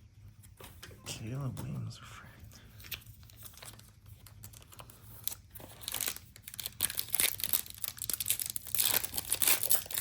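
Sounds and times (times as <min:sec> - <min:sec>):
plastic wrapper crinkling: 0:02.9 - 0:10.0.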